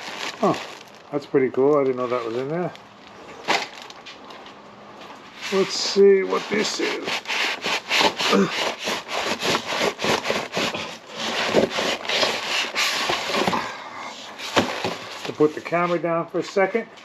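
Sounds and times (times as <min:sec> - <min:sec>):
packaging rustling and scraping: 0:00.0 - 0:16.8.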